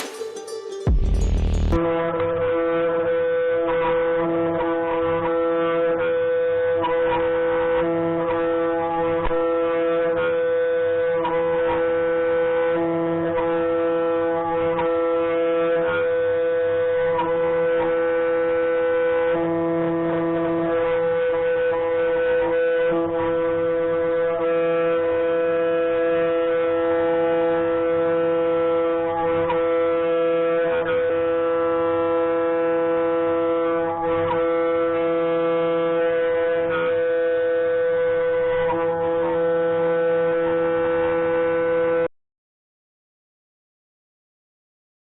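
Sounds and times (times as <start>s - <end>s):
droning chord music: 0.0s - 2.1s.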